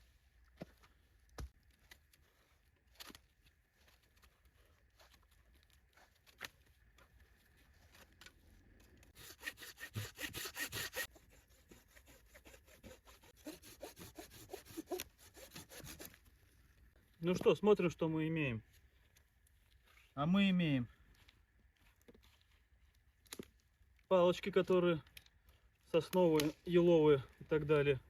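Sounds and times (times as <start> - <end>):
hand saw rasping through wood: 9.2 - 16.2.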